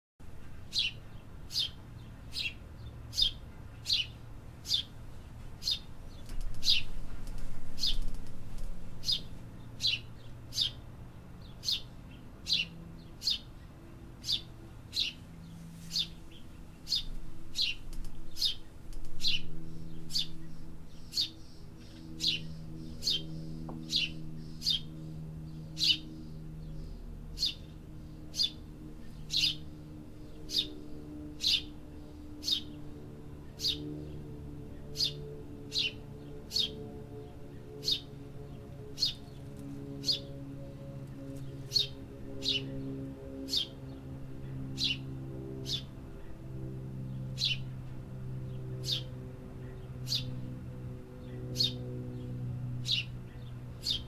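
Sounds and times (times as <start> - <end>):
low background hum: 0.2 - 54.0
bird chirping: 0.7 - 8.3, 9.0 - 10.8, 11.4 - 29.6, 30.2 - 31.7, 32.4 - 32.8, 33.5 - 34.2, 34.8 - 40.3, 41.7 - 42.9, 44.4 - 45.0, 47.3 - 47.7, 48.5 - 50.3, 51.2 - 54.0.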